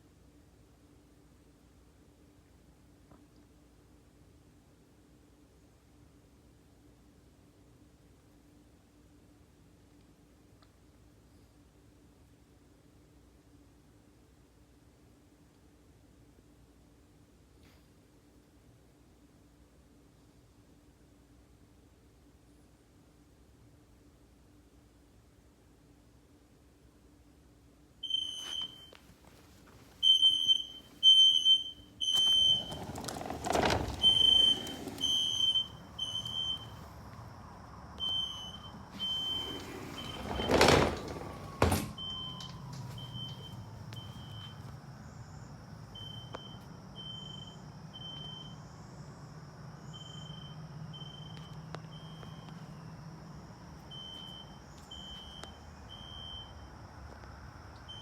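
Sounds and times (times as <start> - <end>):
fire alarm horn beeps: 28.0 - 29.0, 30.0 - 32.9.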